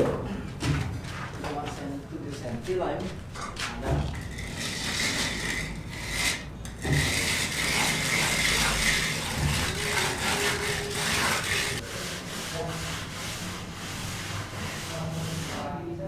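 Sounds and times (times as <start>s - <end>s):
tool rasping on timber: 4.2s - 15.6s.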